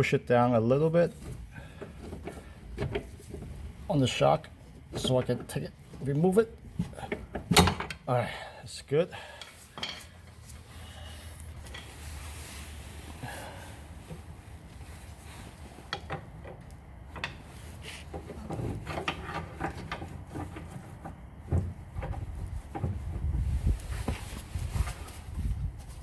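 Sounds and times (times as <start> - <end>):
hand tools knocking and scraping: 0.8 - 8.1, 15.6 - 24.4.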